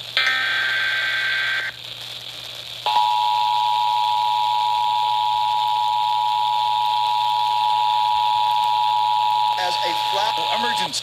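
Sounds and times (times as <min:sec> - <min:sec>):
steady two-tone alert: 0:09.5 - 0:11.0
data burst: 0:09.6 - 0:11.0.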